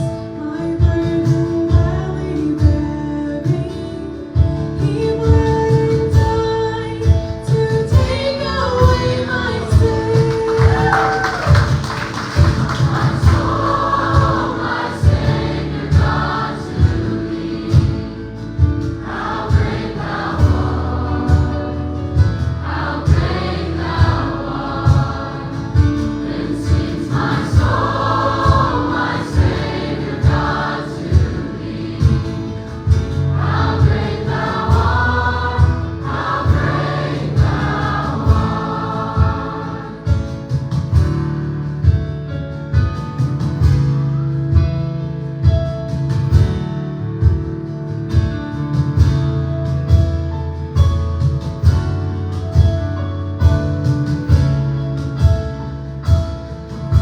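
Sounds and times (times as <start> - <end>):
band accompaniment with beat: 0.8 - 57.0
choir singing gospel song: 7.0 - 41.3.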